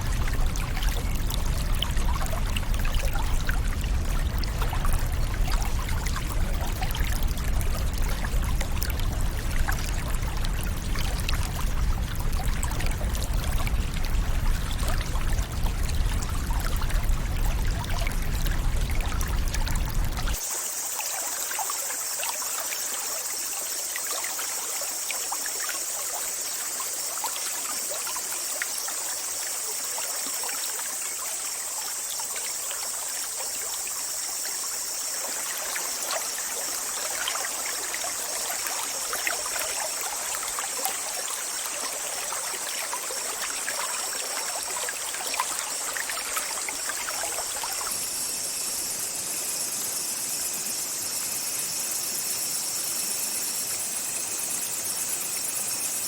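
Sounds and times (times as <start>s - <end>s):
water rushing: 0.0s - 49.0s
trickling stream: 0.0s - 56.0s.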